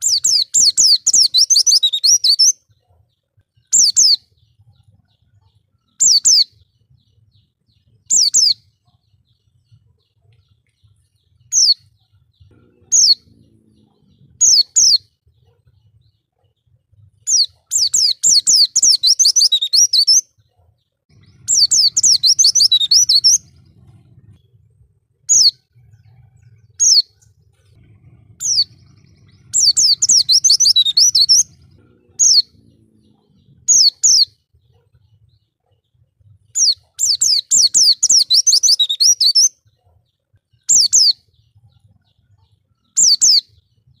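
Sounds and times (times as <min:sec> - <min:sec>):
bird twittering song: 0:00.0 - 0:44.0
short high falling bird calls: 0:21.1 - 0:24.4, 0:27.8 - 0:34.3.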